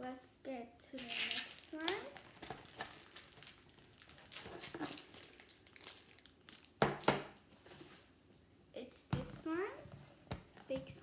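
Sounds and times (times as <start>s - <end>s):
slime clicking and crinkling: 1.0s - 7.1s.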